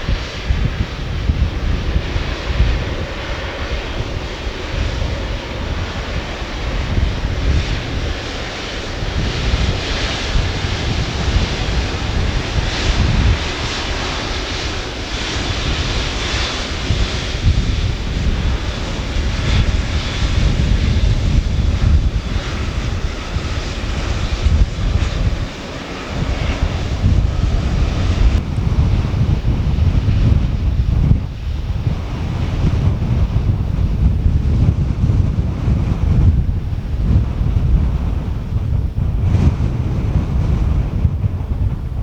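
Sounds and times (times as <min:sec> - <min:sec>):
jet engines roaring: 0:00.0 - 0:42.0.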